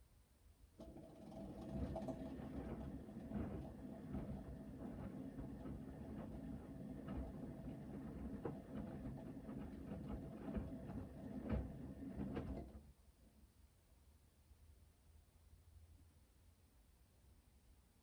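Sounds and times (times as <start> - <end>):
washing machine motor hum: 0.8 - 12.9.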